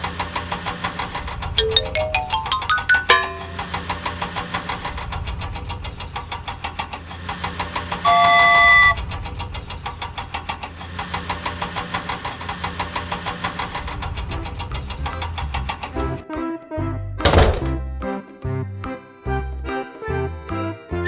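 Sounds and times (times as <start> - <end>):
toy train engine chugging: 6.0 - 11.7
train horn: 8.1 - 9.0.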